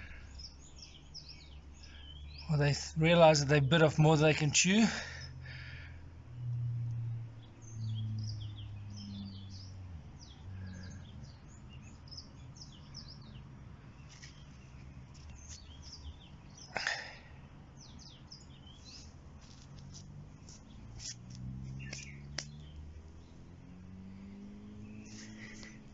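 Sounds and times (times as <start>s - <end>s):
small birds chirping: 0.0s - 25.9s
low hum: 5.4s - 10.8s.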